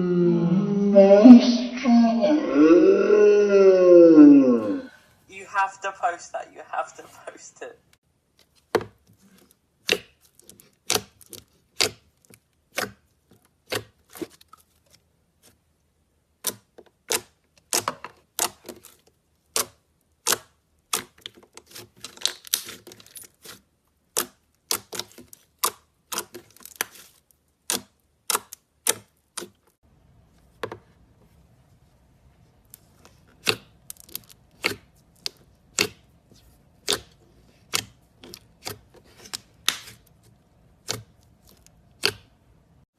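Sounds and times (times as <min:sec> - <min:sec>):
slime clicking and popping: 0:36.8 - 0:40.0, 0:40.7 - 0:42.4.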